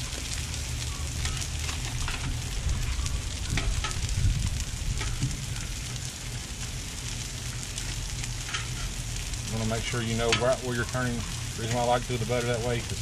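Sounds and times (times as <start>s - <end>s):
low steady rumble: 0.0s - 13.0s
pork chops sizzling on a griddle: 0.0s - 13.0s.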